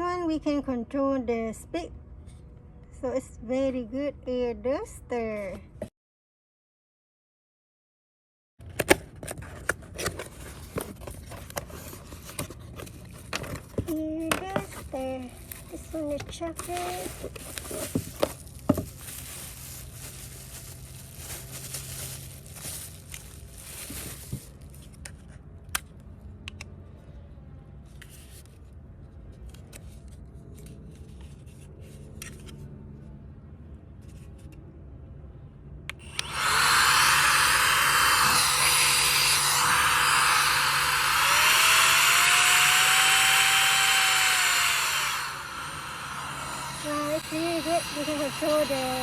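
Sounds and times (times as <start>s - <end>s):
rustling of plants: 14.6s - 25.0s
electric air duster rushing: 16.6s - 24.5s, 36.0s - 49.0s.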